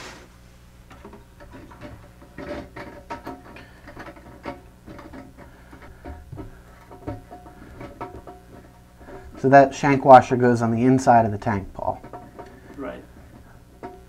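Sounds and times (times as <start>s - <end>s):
steady low hum: 0.0s - 14.0s
plastic parts clicking and knocking: 0.9s - 8.7s.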